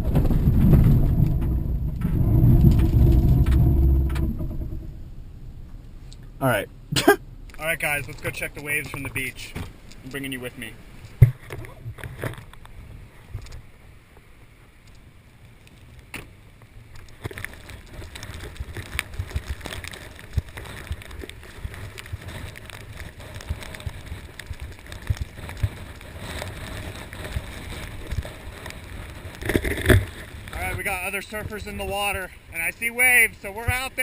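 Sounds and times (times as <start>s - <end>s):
wind buffeting microphone: 0.0s - 14.8s.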